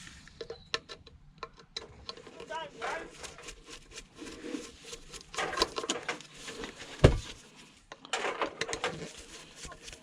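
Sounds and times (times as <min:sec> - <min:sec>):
heavy thump: 0:07.0 - 0:07.3.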